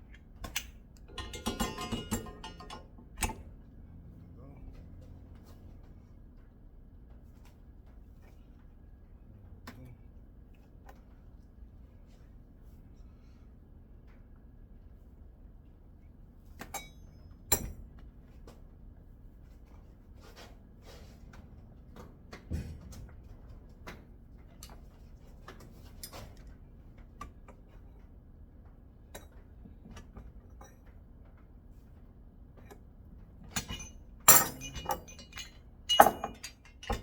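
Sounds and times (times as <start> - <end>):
metal parts clinking: 0.5 - 3.4, 33.5 - 37.0.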